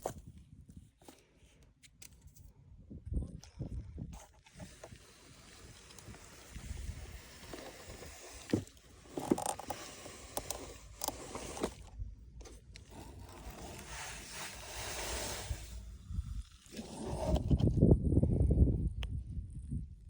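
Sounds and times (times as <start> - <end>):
plastic toys scraping through sand: 4.2 - 17.8
sand hissing: 4.6 - 11.9, 12.9 - 17.4.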